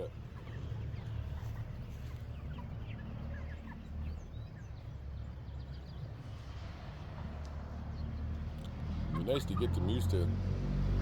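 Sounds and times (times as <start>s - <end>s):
chickens and ducks peeping: 0.0s - 6.3s, 7.9s - 10.2s.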